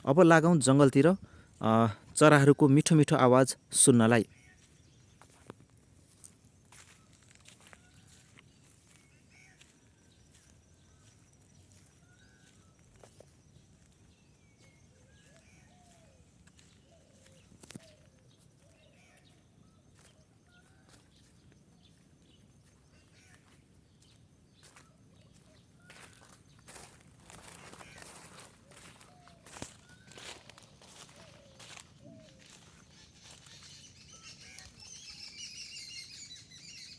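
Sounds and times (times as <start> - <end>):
faint bird chirps: 0.0 - 36.9.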